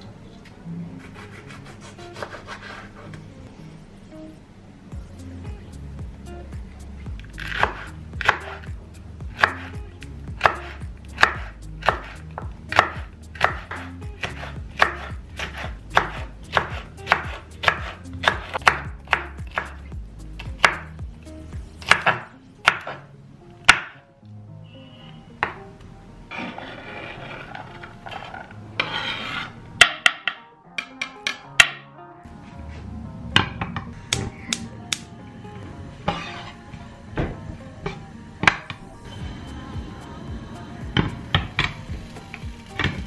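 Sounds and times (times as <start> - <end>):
knife chopping on cutting board: 7.4 - 19.8, 20.4 - 20.9, 21.8 - 23.0.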